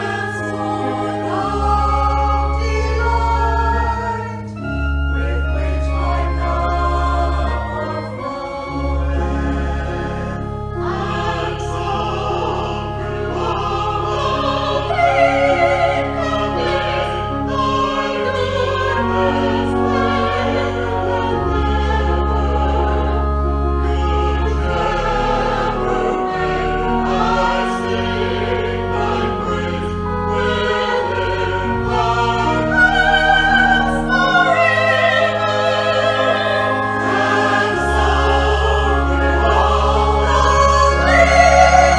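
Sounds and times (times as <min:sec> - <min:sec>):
choir singing: 0:00.0 - 0:41.9
sustained bass notes: 0:00.0 - 0:41.9.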